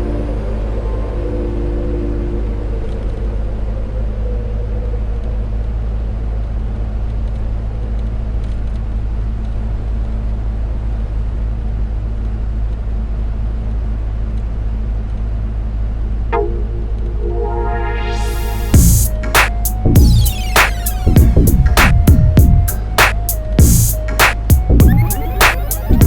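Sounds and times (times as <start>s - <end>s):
music: 0.0s - 3.4s, 16.4s - 26.0s
constant hum: 0.0s - 26.0s.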